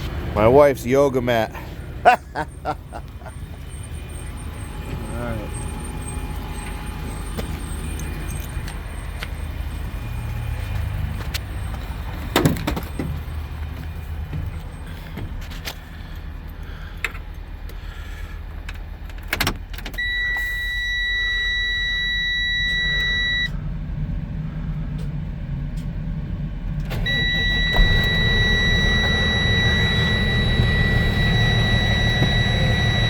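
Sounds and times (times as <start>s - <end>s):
diesel truck engine running: 0.0s - 33.0s
high-pitched warning buzzer: 26.9s - 33.0s.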